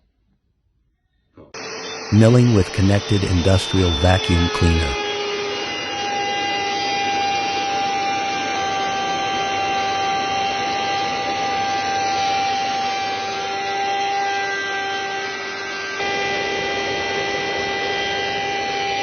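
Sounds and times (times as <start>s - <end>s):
router motor whine: 1.6s - 2.1s, 5.0s - 19.0s.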